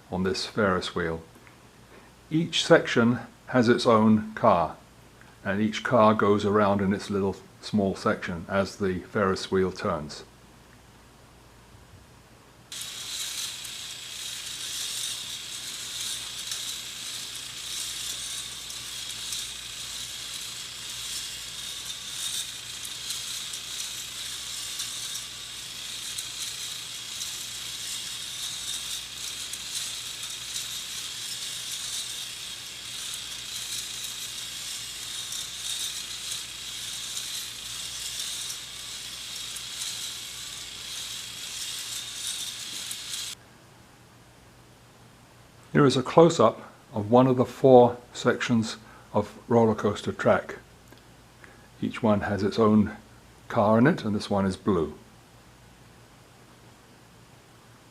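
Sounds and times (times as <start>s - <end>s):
high-pitched motor whir: 12.7s - 43.4s
plastic gears clicking and rattling: 12.7s - 43.4s.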